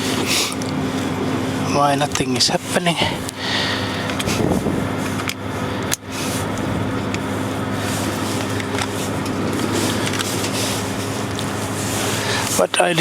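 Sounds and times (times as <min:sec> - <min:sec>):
fan running: 0:00.0 - 0:13.0
faint handling clicks: 0:07.9 - 0:11.7.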